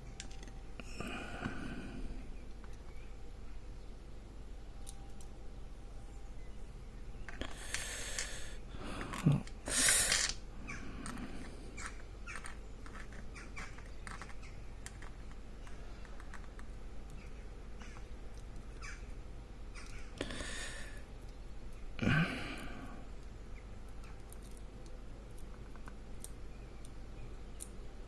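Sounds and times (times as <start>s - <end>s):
small metal parts clicking: 0.0s - 0.6s, 7.3s - 8.4s, 9.0s - 10.4s, 11.0s - 17.3s, 23.9s - 27.0s.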